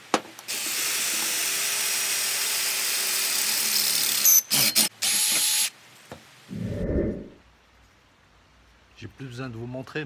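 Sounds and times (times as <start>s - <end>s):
electric drill running: 0.5s - 5.7s.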